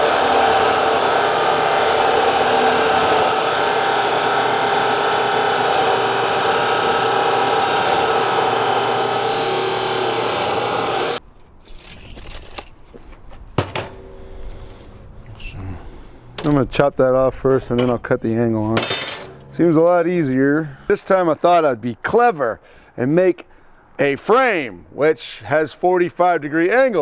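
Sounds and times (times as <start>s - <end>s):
power tool cutting steel: 0.0s - 11.2s.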